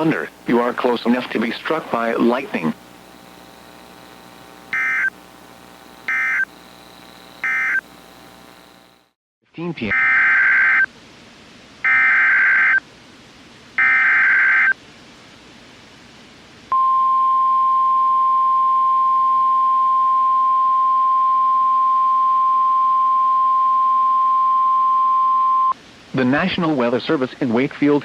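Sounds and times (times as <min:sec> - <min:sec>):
buzzing digital header bursts: 0:00.0 - 0:09.1
steady warning alarm tone: 0:03.6 - 0:09.0, 0:11.9 - 0:12.8, 0:13.8 - 0:14.7.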